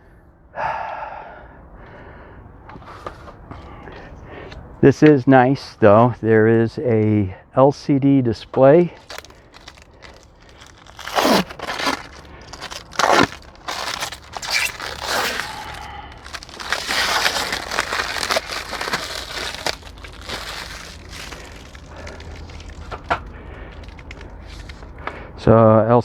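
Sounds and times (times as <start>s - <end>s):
plastic packaging crinkling: 8.8s - 25.2s.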